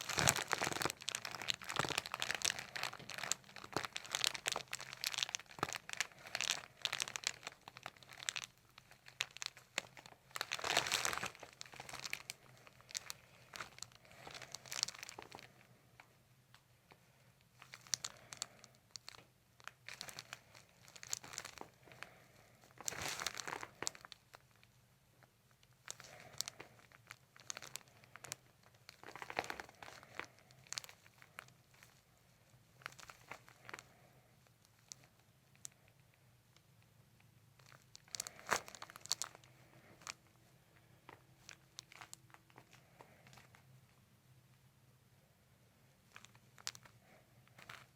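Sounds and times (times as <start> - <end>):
paper crinkling and rustling: 0.0 - 15.7.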